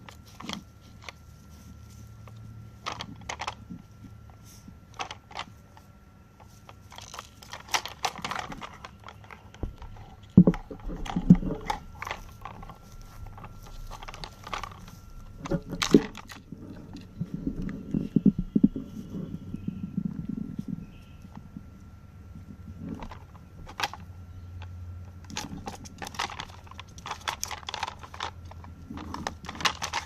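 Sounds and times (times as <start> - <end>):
plastic puzzle toy clicks and scrapes: 6.4 - 19.0, 22.8 - 24.1, 25.2 - 30.0.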